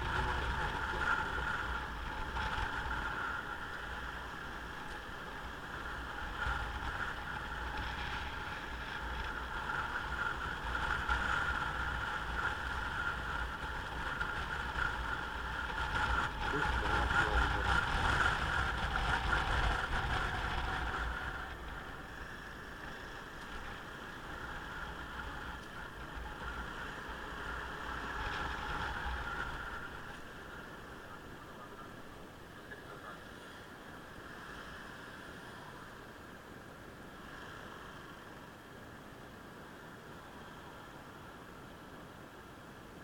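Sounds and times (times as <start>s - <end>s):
motorcycle engine: 0.0s - 31.6s
road noise: 0.0s - 43.0s.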